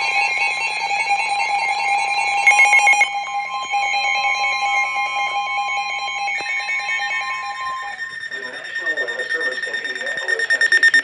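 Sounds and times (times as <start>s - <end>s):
two-tone alert signal: 2.4s - 3.2s, 6.0s - 11.0s
higher electronic tones: 2.5s - 3.5s
rapid data-like chirps: 7.9s - 11.0s.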